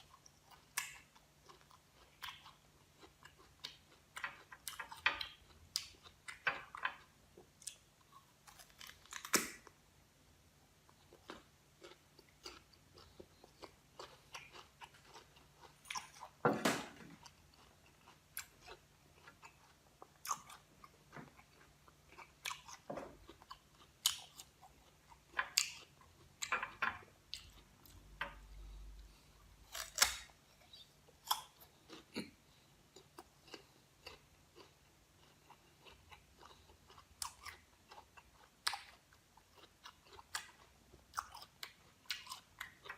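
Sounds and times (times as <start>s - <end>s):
quiet chewing: 0.0s - 9.8s, 10.8s - 16.4s, 17.1s - 42.9s
guava crunching: 7.7s - 9.8s, 28.8s - 32.4s.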